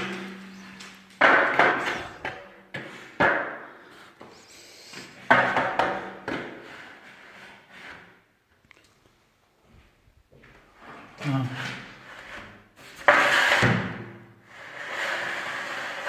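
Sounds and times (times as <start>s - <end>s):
sharp knocks and clatter echoing: 0.0s - 3.6s.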